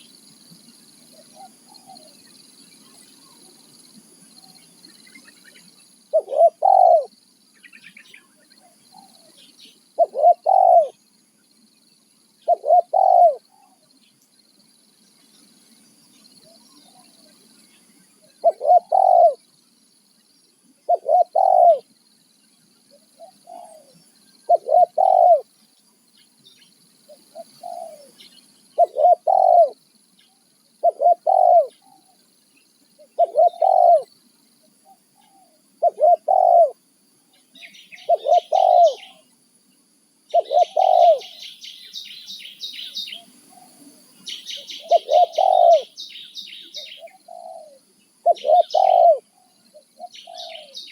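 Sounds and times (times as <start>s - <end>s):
dove cooing: 1.1s - 2.2s, 6.1s - 7.2s, 8.6s - 11.0s, 12.4s - 13.8s, 18.2s - 19.4s, 20.9s - 21.9s, 22.9s - 25.5s, 27.1s - 28.2s, 28.8s - 29.8s, 30.8s - 32.1s, 33.0s - 34.1s, 35.2s - 36.8s, 37.9s - 39.2s, 40.3s - 41.6s, 42.8s - 50.9s
small bird chirping rapidly: 44.2s - 47.5s.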